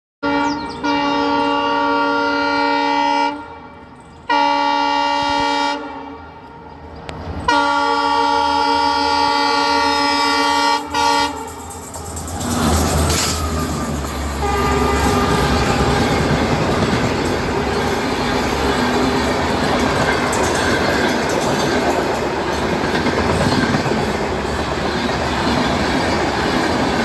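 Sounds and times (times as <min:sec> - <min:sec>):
train horn blasts: 0:00.2 - 0:11.7, 0:13.1 - 0:19.3
low train rumble: 0:00.2 - 0:27.0.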